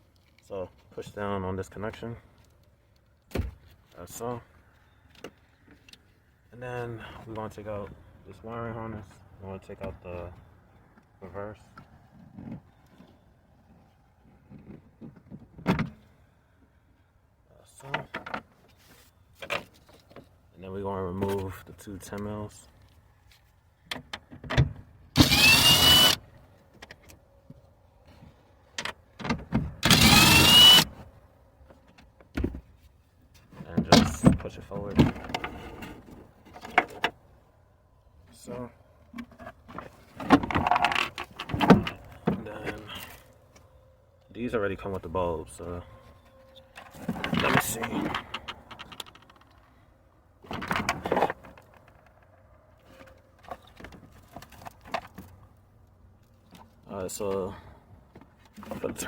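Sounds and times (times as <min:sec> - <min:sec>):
electric drill motor whine: 0:25.2 - 0:26.2, 0:29.8 - 0:30.9.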